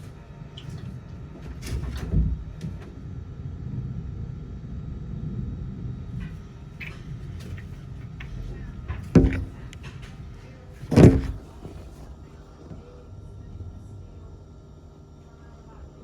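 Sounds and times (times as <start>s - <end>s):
low background rumble: 0.0s - 16.0s
door slamming: 8.9s - 10.0s, 10.9s - 11.8s.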